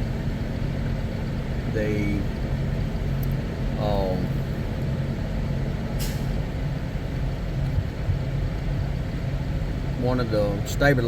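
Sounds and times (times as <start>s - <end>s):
heavy trucks idling: 0.0s - 11.0s
air brake hiss: 6.0s - 6.4s.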